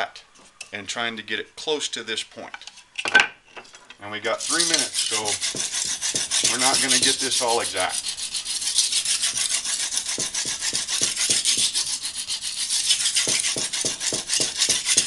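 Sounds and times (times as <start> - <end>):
knife blade rasping on brick: 4.4 - 15.0.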